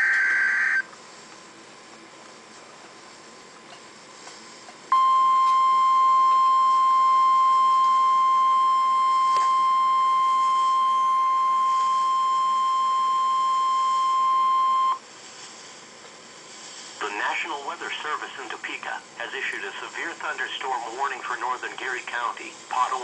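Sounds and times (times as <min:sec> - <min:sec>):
loud steady alarm tone: 0:00.0 - 0:00.9, 0:04.9 - 0:15.0
faint hiss: 0:14.9 - 0:23.0.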